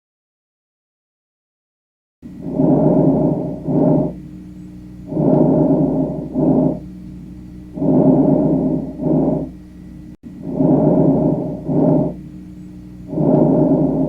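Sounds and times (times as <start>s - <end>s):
faint steady hum: 2.2s - 14.0s
lung breath sounds: 2.3s - 9.6s, 10.3s - 14.0s.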